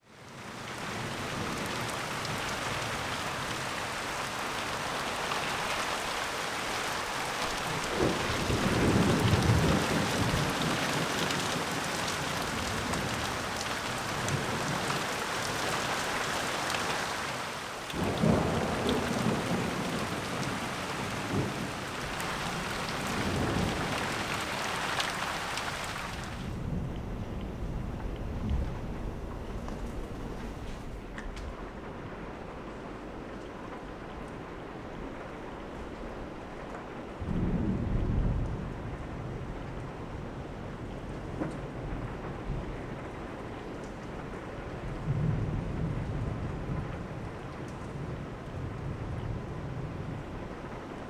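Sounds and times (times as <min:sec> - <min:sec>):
steady rain falling: 0:00.0 - 0:51.0
thunder rumbling: 0:07.3 - 0:14.9, 0:18.0 - 0:33.1.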